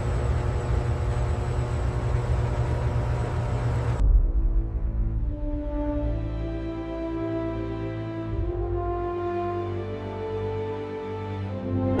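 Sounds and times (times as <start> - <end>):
deep low drone: 0.0 - 8.8
slow sad background music: 4.0 - 12.0.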